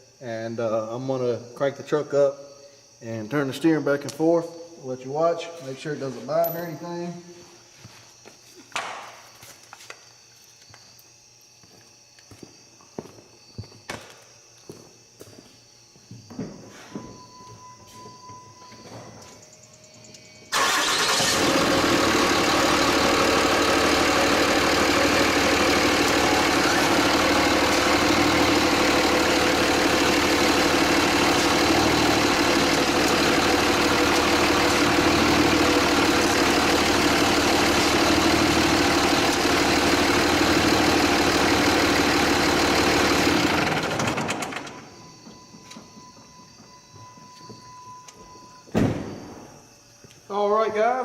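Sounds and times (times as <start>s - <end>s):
pickup engine idling: 20.5s - 45.0s.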